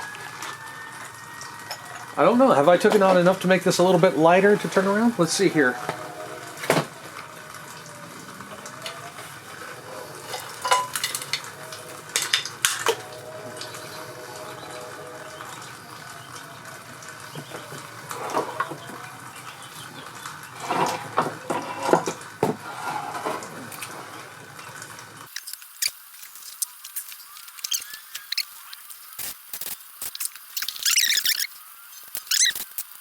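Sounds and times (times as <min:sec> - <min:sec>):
scraping rattle: 0:20.6 - 0:24.2.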